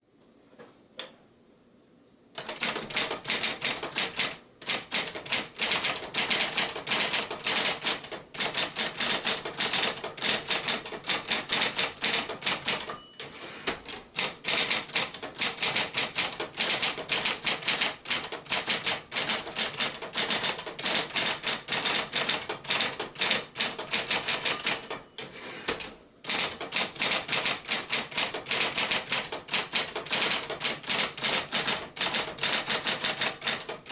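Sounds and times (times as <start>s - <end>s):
typewriter keystroke clacks: 2.4s - 33.9s
typewriter bell ping: 11.6s - 13.6s, 24.0s - 25.5s.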